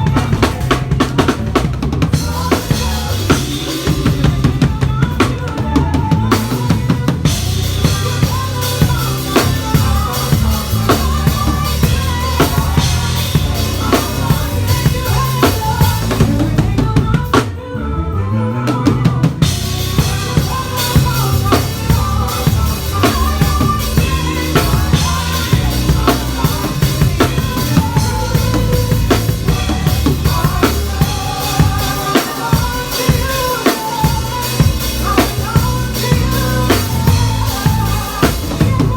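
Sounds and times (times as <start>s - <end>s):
live drum kit: 0.0s - 17.9s, 18.5s - 38.9s
bass: 0.0s - 38.9s.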